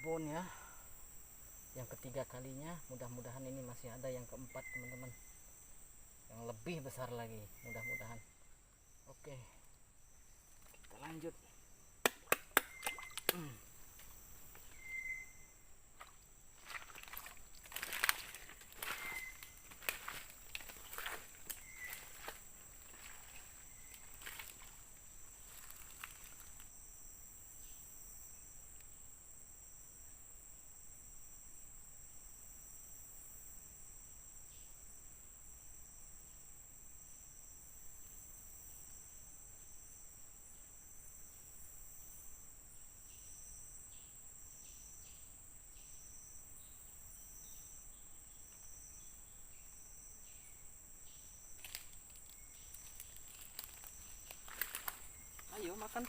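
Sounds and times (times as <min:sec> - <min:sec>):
high-pitched insect drone: 0:00.0 - 0:12.0, 0:12.6 - 0:29.0, 0:37.0 - 0:56.0
pulsing insect call: 0:00.0 - 0:56.0
faint ticks and rustles: 0:15.9 - 0:26.9, 0:51.0 - 0:56.0.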